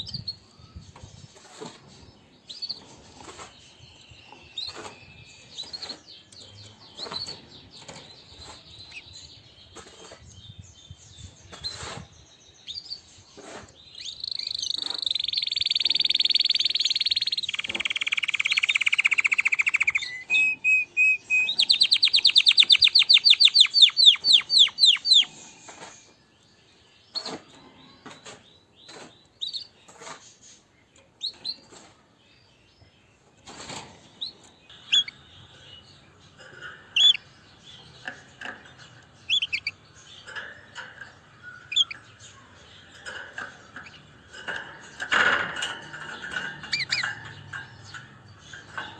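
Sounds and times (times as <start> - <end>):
canary singing trills: 0.0 - 48.9
bird chirps and clicks: 13.5 - 25.8, 27.1 - 31.9, 33.3 - 48.9.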